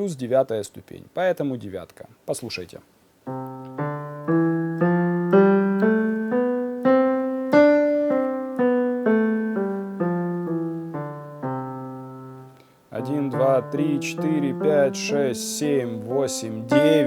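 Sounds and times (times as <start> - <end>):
piano playing a scale: 3.3 - 17.0.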